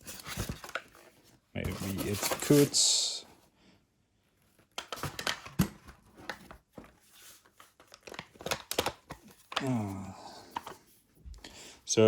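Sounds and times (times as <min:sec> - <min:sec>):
crinkling rustles of gear: 0:00.0 - 0:02.7.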